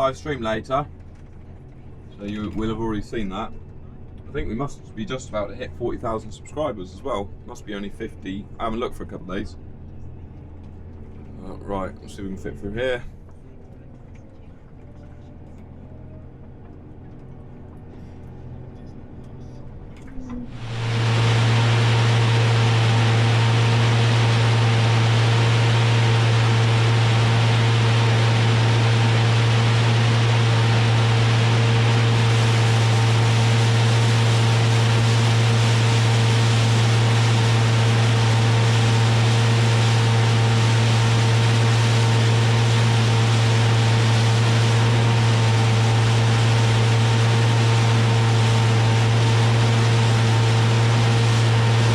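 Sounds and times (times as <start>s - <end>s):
combine harvester running: 14.7s - 51.9s.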